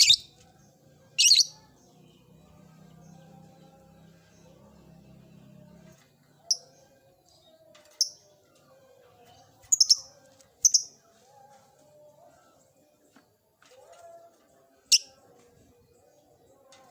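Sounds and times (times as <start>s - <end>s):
lovebird chirping: 0.0s - 0.3s, 1.2s - 1.6s.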